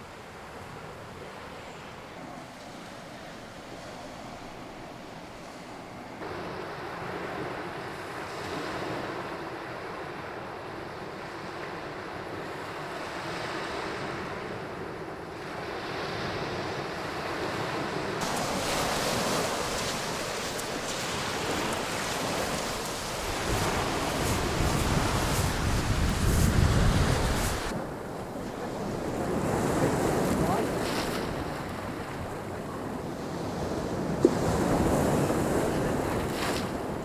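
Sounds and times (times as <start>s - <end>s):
sea waves washing onto beach: 0.0s - 37.0s
wind rumbling on microphone: 13.9s - 37.0s.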